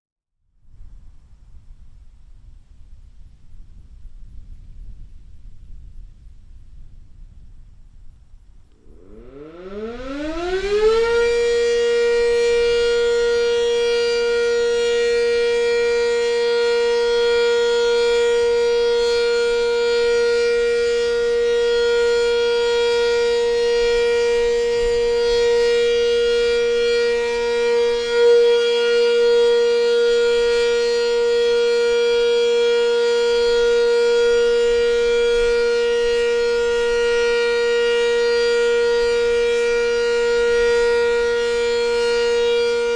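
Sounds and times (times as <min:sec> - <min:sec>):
outdoor warning siren: 0:08.6 - 0:42.9.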